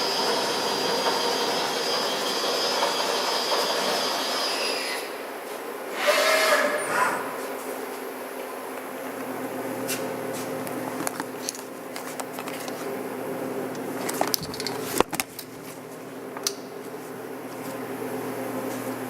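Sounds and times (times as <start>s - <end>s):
milling machine humming: 0.0s - 6.4s.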